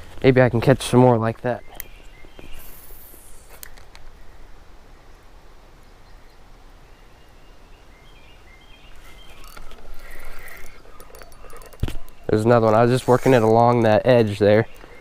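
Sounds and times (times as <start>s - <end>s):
short bird chirps: 1.6s - 3.6s.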